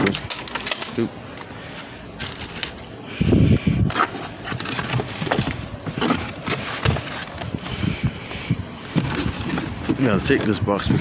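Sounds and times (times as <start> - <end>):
items knocking and dropping into box: 3.9 - 7.7.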